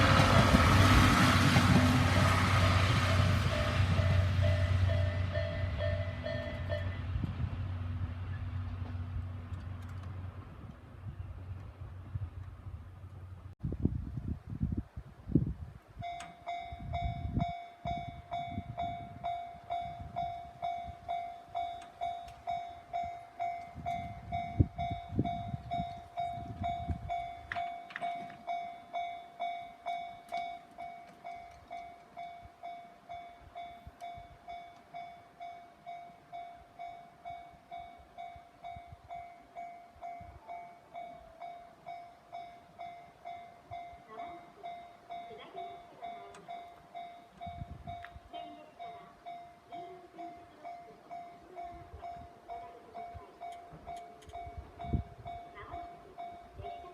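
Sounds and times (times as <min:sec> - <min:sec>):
train rumbling past: 0:00.0 - 0:56.9
level-crossing alarm bell ringing: 0:03.1 - 0:07.0
wheels clicking over rail joints: 0:18.3 - 0:24.9, 0:25.6 - 0:32.2, 0:42.4 - 0:56.9.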